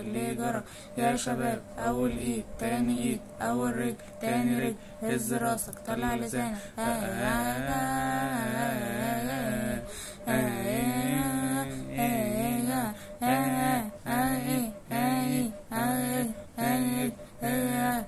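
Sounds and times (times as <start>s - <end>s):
person humming a chant: 0.0s - 18.0s.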